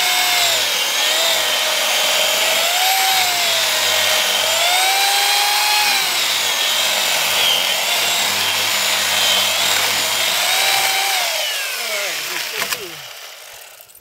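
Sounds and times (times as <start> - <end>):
electric chainsaw motor whine: 0.0 - 14.0
chain rasping in wood: 12.2 - 14.0.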